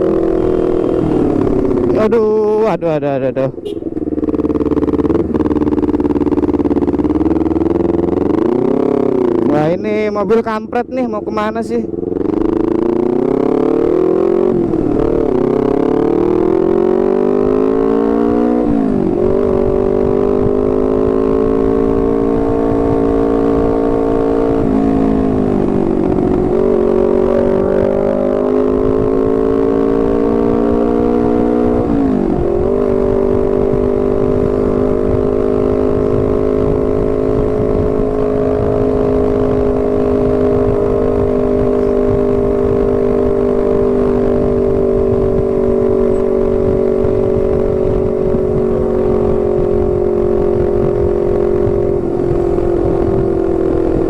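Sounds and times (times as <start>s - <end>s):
motorcycle engine accelerating: 0.0s - 54.0s
wind rush: 11.3s - 54.0s.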